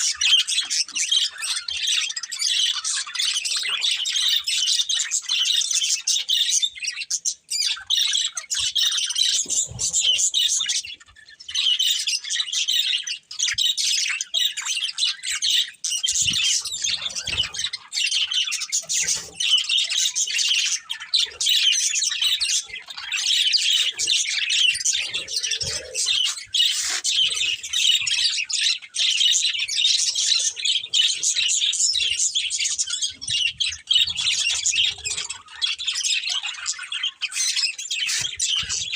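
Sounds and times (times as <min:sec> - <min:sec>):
budgerigars chirping: 0:00.0 - 0:38.9.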